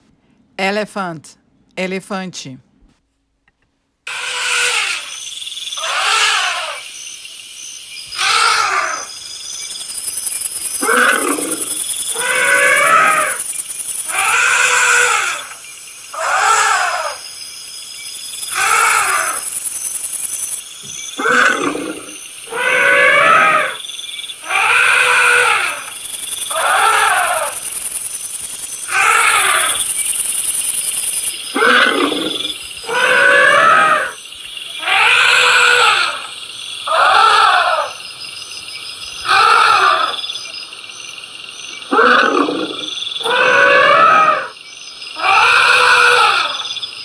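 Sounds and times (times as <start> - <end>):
elephant trumpeting: 4.1 - 6.9, 8.1 - 9.2, 10.8 - 13.4, 14.0 - 15.6, 16.2 - 17.2, 21.2 - 23.8, 24.4 - 27.6, 28.9 - 29.8, 31.5 - 34.2, 34.8 - 36.3, 36.9 - 38.0, 39.3 - 40.2, 45.2 - 46.6
steady high hiss: 4.1 - 45.2.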